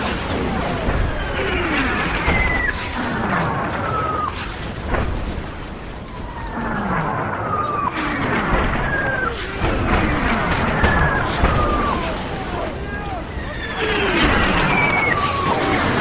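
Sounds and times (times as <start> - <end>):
low rumble of blasts: 0.0 - 16.0
shell explosions: 0.0 - 16.0
shells whistling down: 1.1 - 4.6, 7.5 - 16.0.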